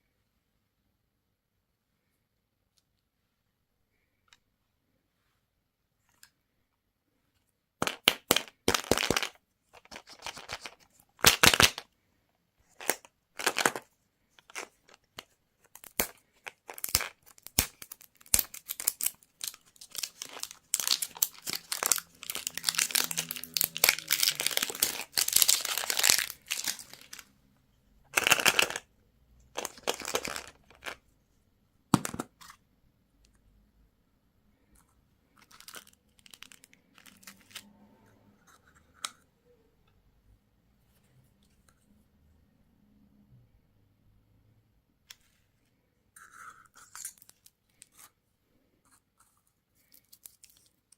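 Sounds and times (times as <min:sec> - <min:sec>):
candy wrappers crinkling: 0:07.8 - 0:11.9, 0:12.7 - 0:27.3, 0:28.1 - 0:28.9, 0:29.5 - 0:31.0, 0:35.3 - 0:37.6, 0:49.8 - 0:50.9.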